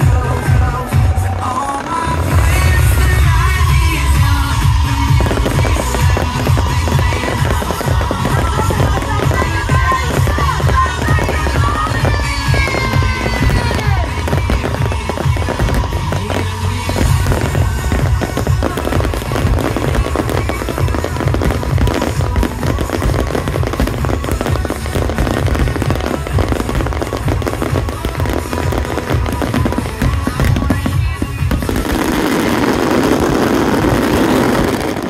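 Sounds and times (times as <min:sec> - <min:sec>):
fireworks bangs and crackles: 0:00.0 - 0:35.0.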